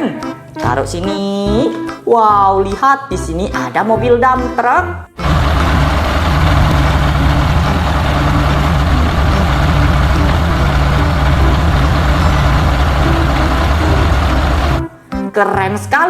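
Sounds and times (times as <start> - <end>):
truck engine idling: 5.2 - 14.9.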